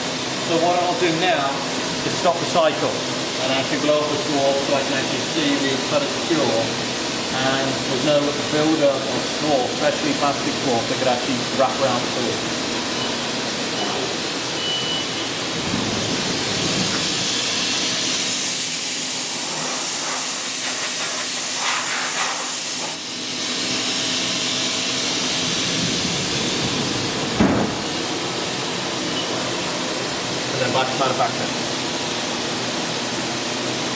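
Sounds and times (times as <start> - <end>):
compressed air hissing: 4.3 - 28.2.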